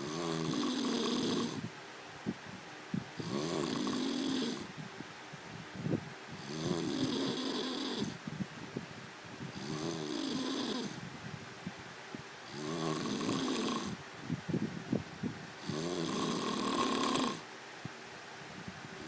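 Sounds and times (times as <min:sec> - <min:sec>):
person snoring: 0:00.0 - 0:01.7, 0:03.2 - 0:04.7, 0:06.4 - 0:08.2, 0:09.5 - 0:11.0, 0:12.5 - 0:14.0, 0:15.6 - 0:17.4.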